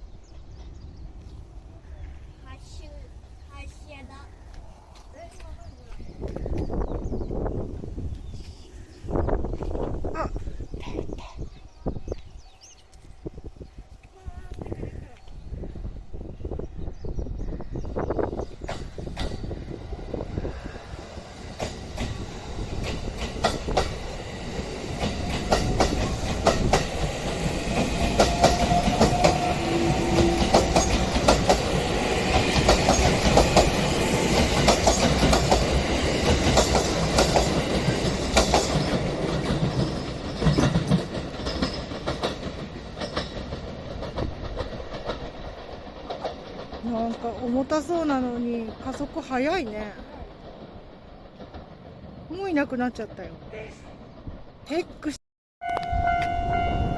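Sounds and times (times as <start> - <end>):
train wheels clattering over rails: 18.2 - 19.9, 20.5 - 54.6.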